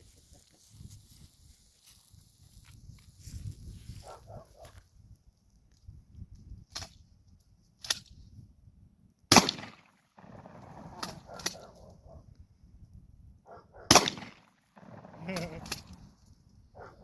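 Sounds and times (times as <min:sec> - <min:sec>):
loud shotgun shot: 0:09.3 - 0:11.7, 0:13.9 - 0:16.0.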